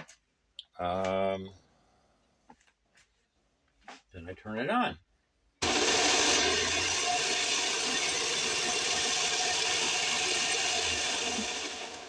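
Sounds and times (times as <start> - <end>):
saber saw motor whine and rattle: 5.6 - 12.0.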